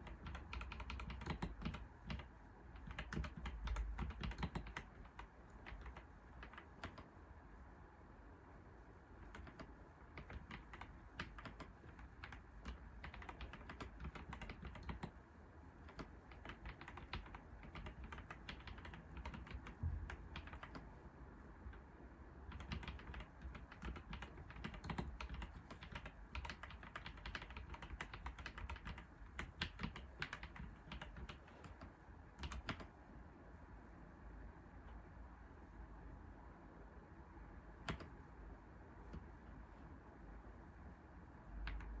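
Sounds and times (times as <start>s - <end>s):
typing on keyboard: 0.0s - 7.1s, 9.2s - 15.2s, 15.8s - 20.9s, 22.5s - 33.0s, 37.8s - 38.2s, 41.6s - 42.0s.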